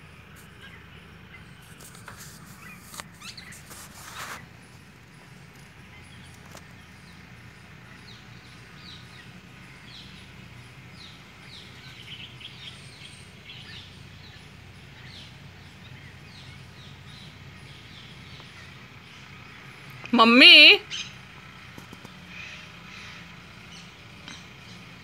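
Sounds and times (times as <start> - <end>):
parrots chirping: 2.2 - 4.4.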